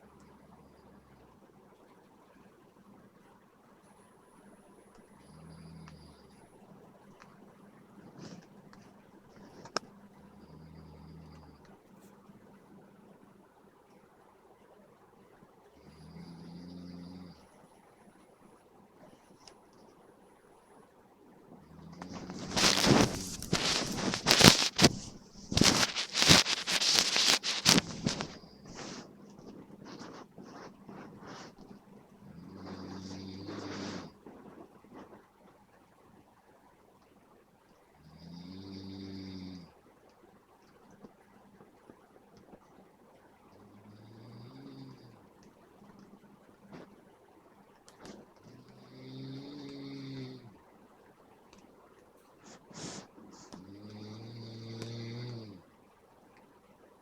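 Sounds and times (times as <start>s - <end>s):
rustling scratching noises: 7.9s - 10.0s, 22.0s - 35.6s, 52.0s - 53.7s
person snoring: 15.8s - 17.4s, 32.2s - 34.2s, 48.8s - 50.5s, 52.9s - 55.6s.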